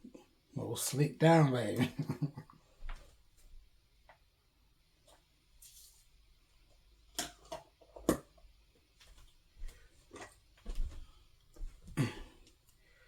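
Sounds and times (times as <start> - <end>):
soft hiss: 0.1 - 6.9.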